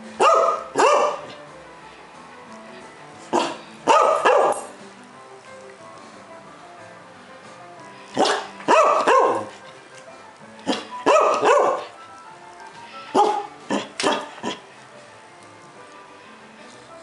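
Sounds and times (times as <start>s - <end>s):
dog barking: 0.2s - 1.4s, 3.3s - 4.7s, 8.2s - 9.6s, 10.7s - 12.0s, 13.1s - 14.6s.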